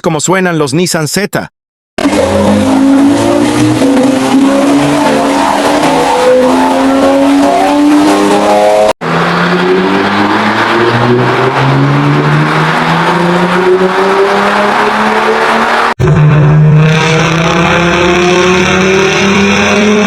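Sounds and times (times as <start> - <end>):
sports car engine accelerating: 2.0 - 20.0.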